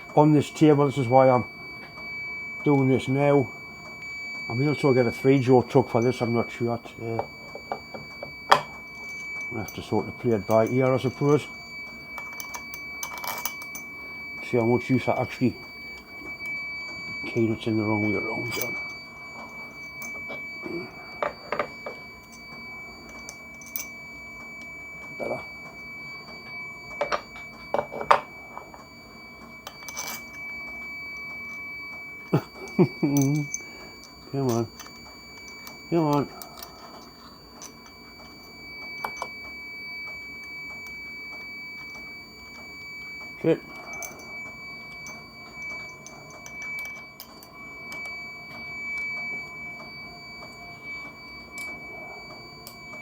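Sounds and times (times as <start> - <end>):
steady high-pitched whine: 0.0 - 53.0
metal parts clinking: 29.6 - 30.4.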